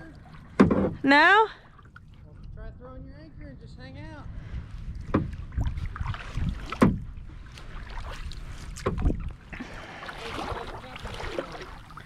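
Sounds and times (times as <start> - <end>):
water splashing: 0.0 - 2.6, 5.0 - 12.0
kayak paddle knocks: 0.4 - 1.2, 5.0 - 5.8, 6.6 - 7.1, 8.7 - 9.3.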